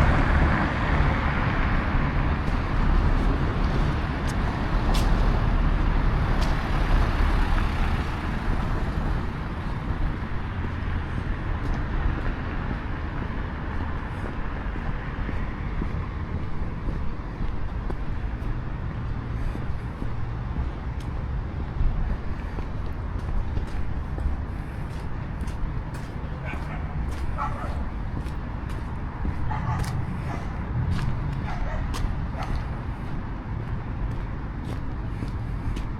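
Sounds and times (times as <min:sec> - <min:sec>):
road traffic rumble: 0:00.0 - 0:35.9.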